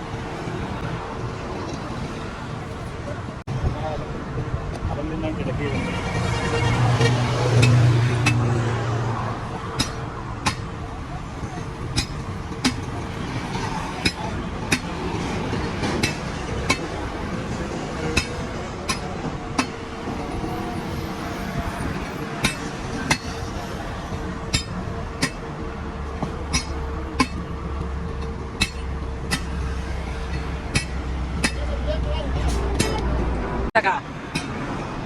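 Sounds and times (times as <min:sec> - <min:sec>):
hammer striking metal: 0:06.5 - 0:20.6, 0:21.6 - 0:25.5, 0:26.1 - 0:33.2.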